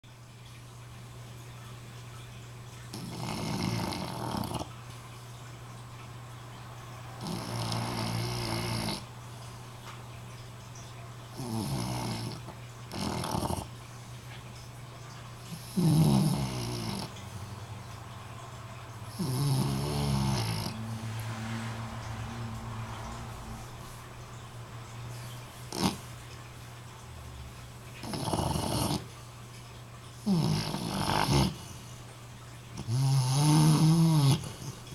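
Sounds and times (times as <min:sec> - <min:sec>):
person snoring: 0:19.2 - 0:21.1.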